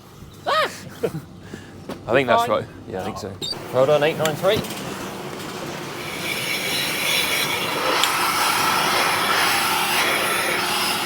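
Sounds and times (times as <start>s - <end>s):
milking machinery hiss: 4.9s - 11.0s.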